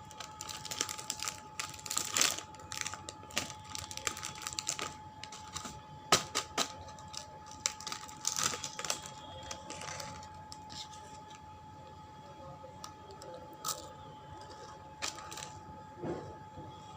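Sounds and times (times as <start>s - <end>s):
wrapper crackling: 0.0s - 11.4s, 13.6s - 15.6s
faint steady hum: 0.0s - 16.9s.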